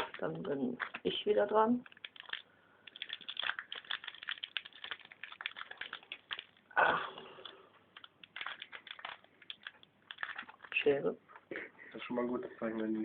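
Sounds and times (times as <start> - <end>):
foil wrapper crinkling: 0.0 - 6.6, 7.3 - 11.0.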